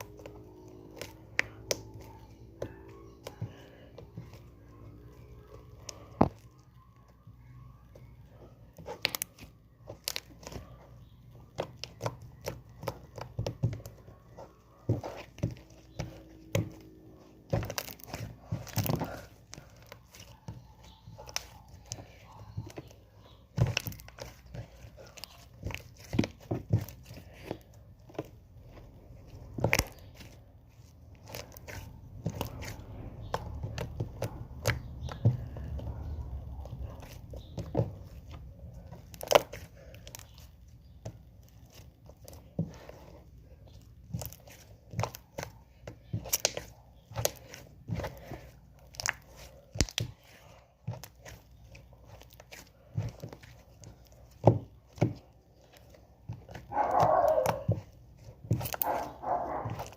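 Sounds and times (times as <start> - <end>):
slime squished by hand: 29.2 - 59.9.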